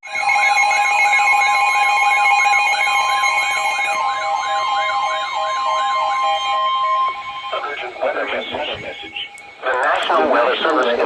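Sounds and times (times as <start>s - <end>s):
steady high alarm tone: 0.0s - 11.0s
warbling siren-like tone: 0.0s - 11.0s
rapid alternating beeps: 0.1s - 11.0s.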